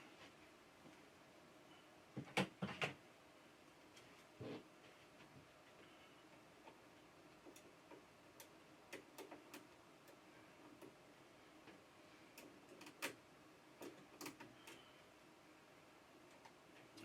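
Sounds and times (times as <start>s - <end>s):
faint clicks and snips: 5.7s - 11.0s, 11.6s - 13.2s, 13.8s - 15.0s, 16.2s - 17.0s.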